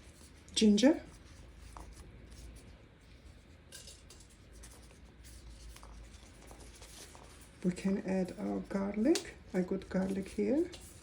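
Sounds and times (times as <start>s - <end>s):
low steady hum: 0.0s - 11.0s
hands rustling and scratching: 1.2s - 7.8s.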